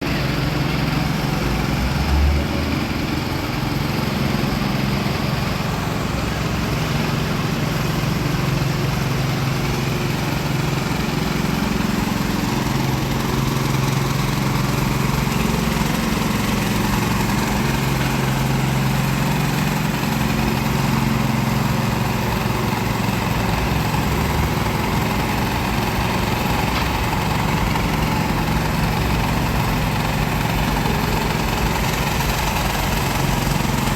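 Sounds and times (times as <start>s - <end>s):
engine idling: 0.0s - 33.9s.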